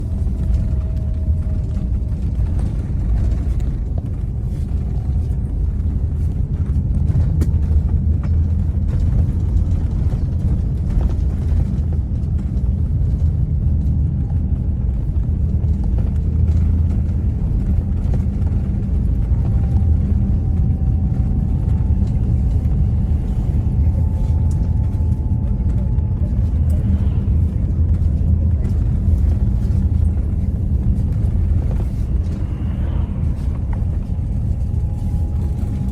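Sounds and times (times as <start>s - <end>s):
vehicle low rumble: 0.0s - 35.9s
faint high whine: 19.2s - 35.9s.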